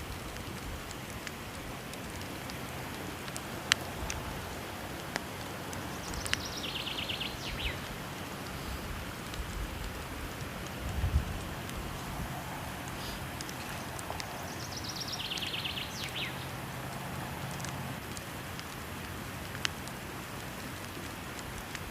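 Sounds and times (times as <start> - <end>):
rush of falling water: 0.0 - 21.9
wood fire crackling: 0.0 - 21.9
bird calling: 5.6 - 8.8, 11.8 - 18.0.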